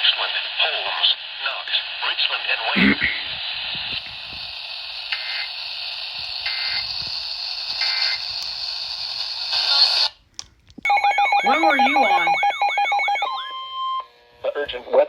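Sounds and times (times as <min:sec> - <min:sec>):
radio static hiss: 0:00.0 - 0:10.1.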